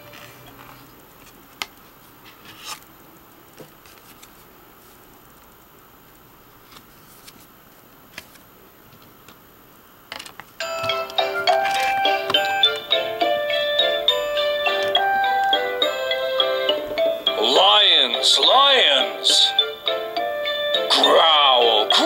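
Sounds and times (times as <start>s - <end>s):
children's song music: 10.6s - 22.0s.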